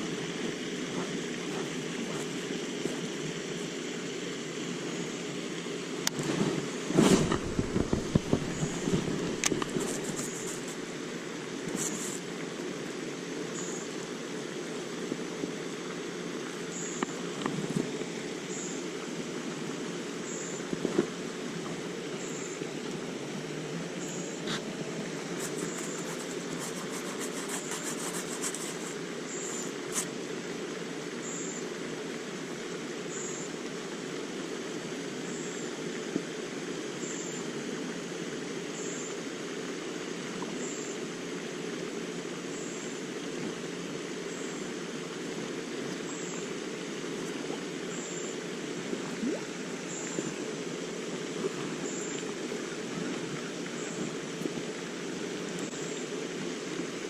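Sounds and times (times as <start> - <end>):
steady rushing noise: 6.0 - 10.9.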